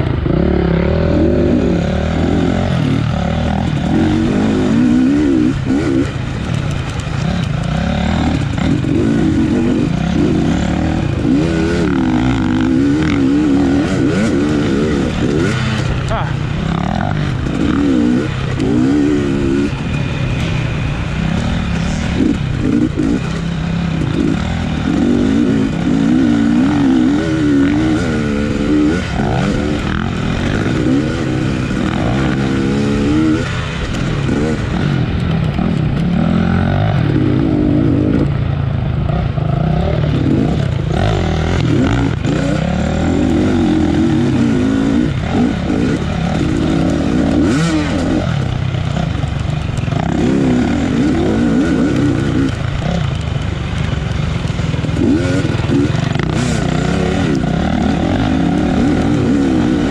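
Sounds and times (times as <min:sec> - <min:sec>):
dirt bike engine revving: 0:00.0 - 0:59.9.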